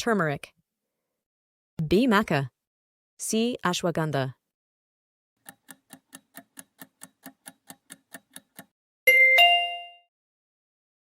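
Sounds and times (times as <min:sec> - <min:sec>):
clock-like ticks: 0:05.4 - 0:08.8
two-note ding-dong chime: 0:09.1 - 0:10.1.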